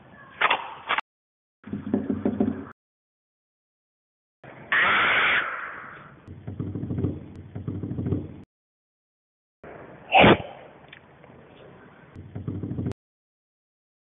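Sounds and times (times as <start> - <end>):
soft low thumps: 12.2 - 13.0.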